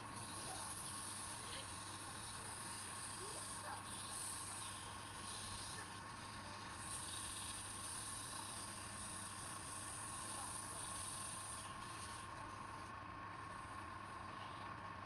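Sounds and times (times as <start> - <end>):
wood lathe motor hum: 0.0 - 15.0.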